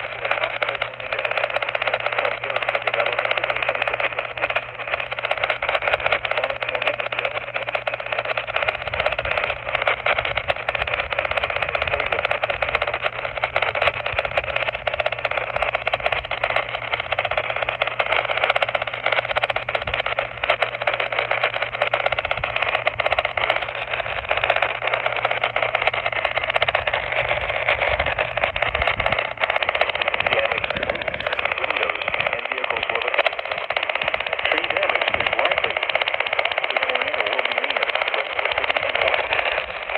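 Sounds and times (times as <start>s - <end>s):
low hum: 0.0s - 39.9s
radio static hiss: 0.0s - 39.9s.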